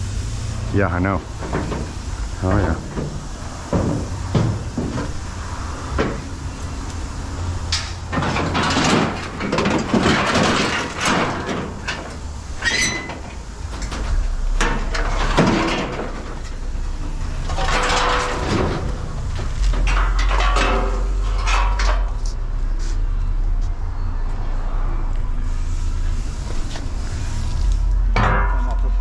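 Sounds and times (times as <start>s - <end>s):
scrap metal clanking: 1.0s - 22.4s.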